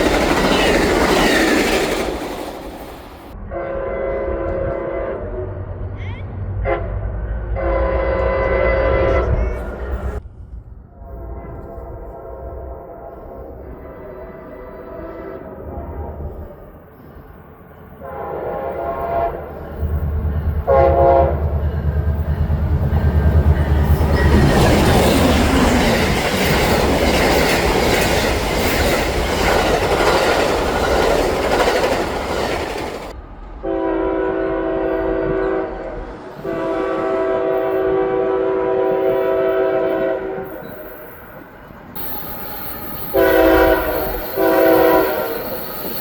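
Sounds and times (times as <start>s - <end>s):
train rushing and rail clatter: 0.0s - 3.5s, 4.2s - 46.0s
locomotive air horn blasts: 3.4s - 5.5s, 6.6s - 10.0s, 10.9s - 15.7s, 18.0s - 19.6s, 20.6s - 21.6s, 33.6s - 40.9s, 42.0s - 45.6s.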